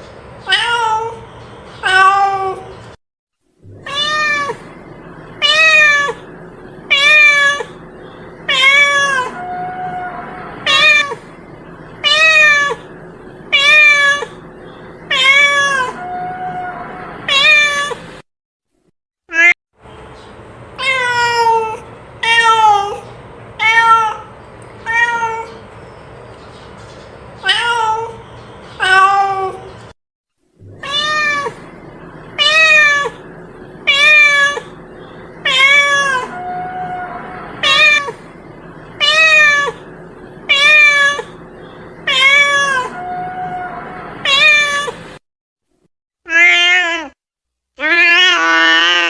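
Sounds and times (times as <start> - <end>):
cat meowing: 0.4 - 1.2, 1.8 - 2.7, 3.7 - 4.7, 5.4 - 6.2, 6.9 - 7.8, 8.5 - 11.2, 12.0 - 12.9, 13.5 - 14.4, 15.1 - 18.0, 20.8 - 23.0, 23.6 - 25.6, 27.4 - 28.2, 28.8 - 29.7, 30.7 - 31.7, 32.4 - 33.2, 33.9 - 34.8, 35.4 - 38.3, 39.0 - 39.9, 40.5 - 41.4, 42.0 - 45.0, 46.3 - 47.2, 47.8 - 49.0.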